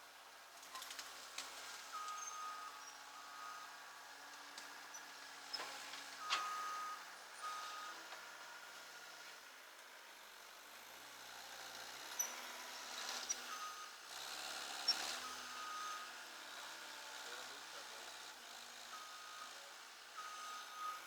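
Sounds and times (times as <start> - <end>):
vehicle reversing alarm beeping: 6.2 - 8.0, 13.3 - 14.0, 15.2 - 16.2, 18.9 - 19.6, 20.2 - 21.0.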